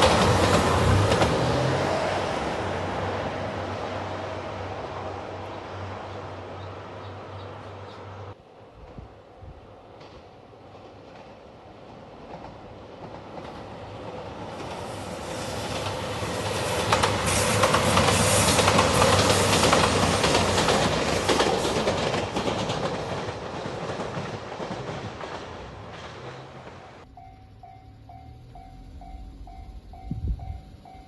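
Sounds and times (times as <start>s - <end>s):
train wheels clicking over rail joints: 0.0s - 2.1s, 9.9s - 31.0s
crossing bell ringing: 27.0s - 31.0s.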